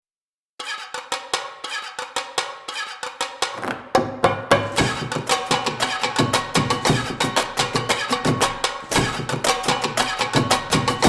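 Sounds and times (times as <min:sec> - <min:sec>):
percussive background music: 0:00.6 - 0:11.0.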